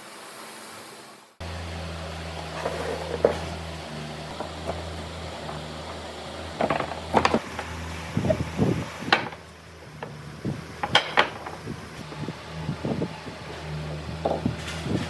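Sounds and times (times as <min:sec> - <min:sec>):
steady low hum: 0:01.4 - 0:15.0
woodworking knocks and taps: 0:04.3 - 0:12.2, 0:14.2 - 0:14.7.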